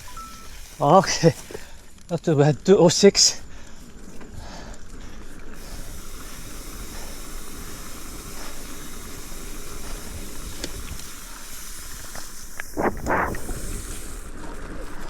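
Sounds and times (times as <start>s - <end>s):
bicycle tyres hissing on wet trail: 0.0s - 15.0s
rushing air: 5.6s - 15.0s.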